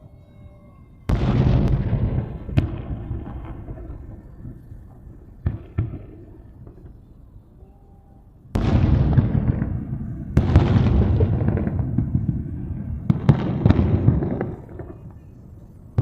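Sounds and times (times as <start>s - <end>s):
small firework pops: 1.1s - 7.0s, 13.1s - 16.0s
firework booms: 1.1s - 7.1s, 8.5s - 16.0s
rumbling crackle: 1.2s - 7.2s, 8.6s - 16.0s.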